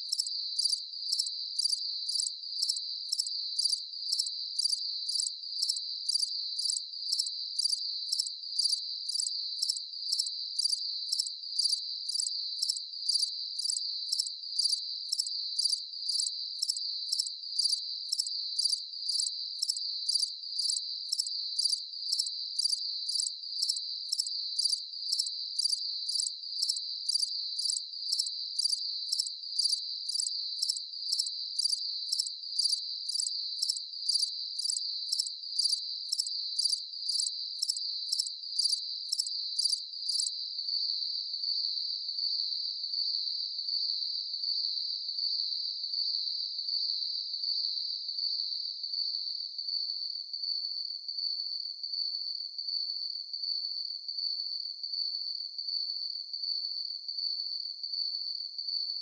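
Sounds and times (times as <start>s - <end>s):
crickets chirping: 0.0s - 41.1s.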